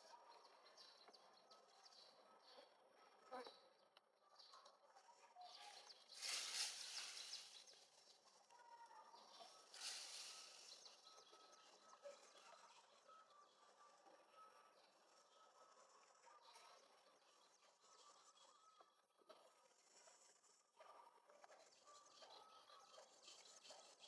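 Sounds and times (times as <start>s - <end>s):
hissy noise: 6.2s - 7.6s, 9.8s - 10.7s
distant bird calls: 6.2s - 7.8s.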